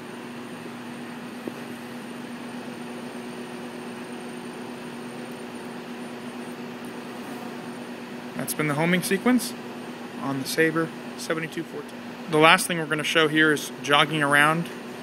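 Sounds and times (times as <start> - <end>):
cnc router gantry humming: 0.0 - 15.0.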